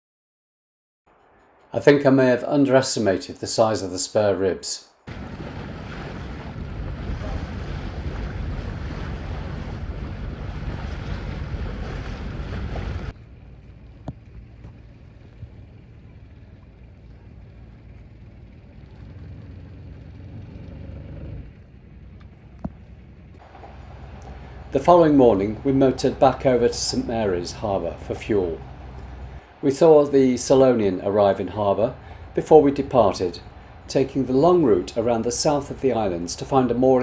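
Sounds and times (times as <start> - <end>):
wind: 1.1 - 37.0
sea noise: 4.9 - 13.1, 23.4 - 37.0
wind buffeting microphone: 5.1 - 13.1, 23.4 - 37.0
steady low rumble: 5.1 - 20.5, 21.4 - 37.0.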